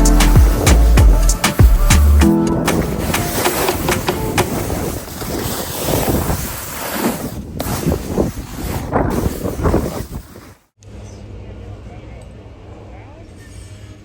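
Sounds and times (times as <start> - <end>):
wind on microphone: 2.5 - 10.6
snowboard carving through slush: 2.7 - 10.6.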